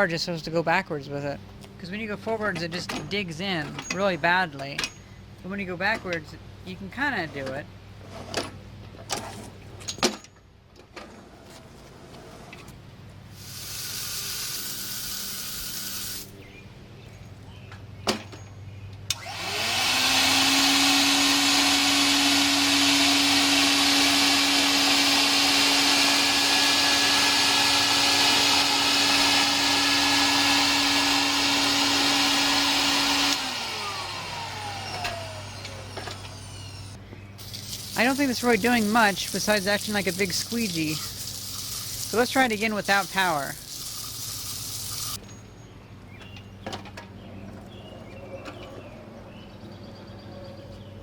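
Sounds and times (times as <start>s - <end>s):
floor dryer motor whining: 19.1s - 37.0s.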